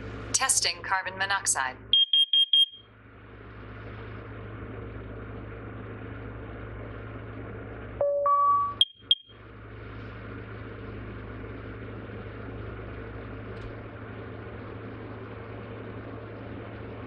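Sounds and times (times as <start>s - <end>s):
steady low hum and hiss: 0.0s - 17.0s
smoke alarm beep: 1.9s - 2.8s, 8.0s - 9.4s.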